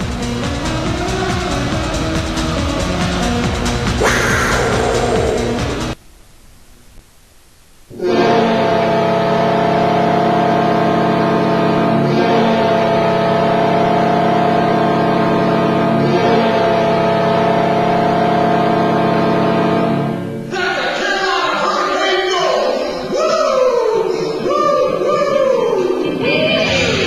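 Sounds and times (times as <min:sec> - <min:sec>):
arena music: 0:00.1 - 0:06.0
crowd noise: 0:04.0 - 0:06.0, 0:20.6 - 0:27.0
goal horn blast: 0:08.0 - 0:20.2.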